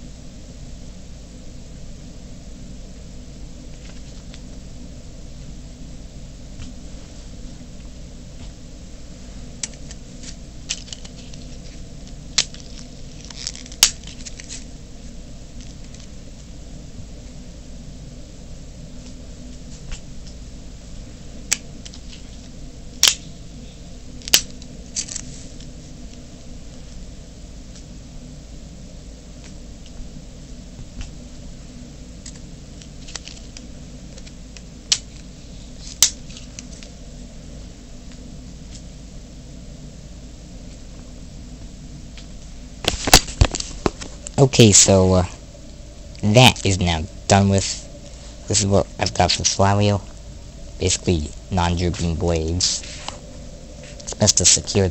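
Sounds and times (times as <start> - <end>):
steady low hum: 0.0 - 54.9
hands handling craft parts: 9.4 - 14.7.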